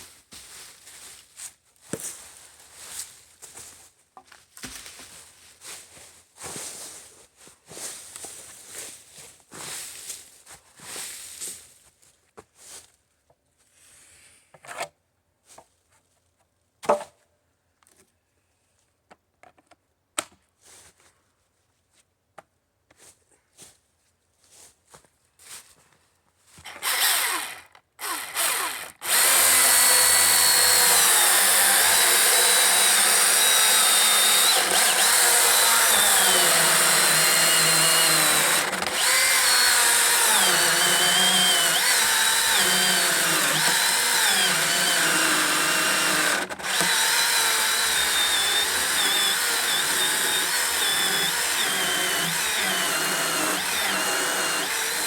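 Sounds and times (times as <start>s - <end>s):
electric chainsaw cutting wood: 26.7s - 55.0s.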